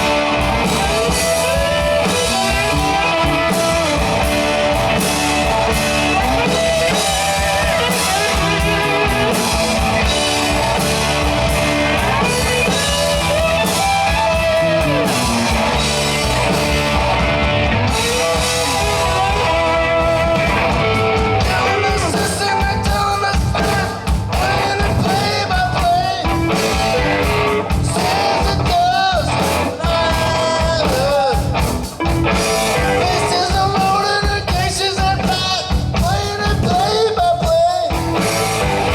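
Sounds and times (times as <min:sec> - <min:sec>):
rock band playing: 0:00.0 - 0:38.9
person singing: 0:17.9 - 0:31.6, 0:32.3 - 0:38.4.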